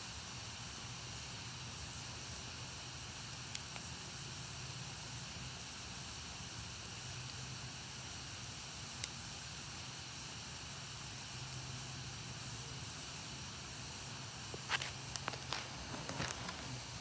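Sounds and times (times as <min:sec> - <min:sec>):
fire crackles: 0:00.0 - 0:17.0
fire hissing: 0:00.0 - 0:17.0.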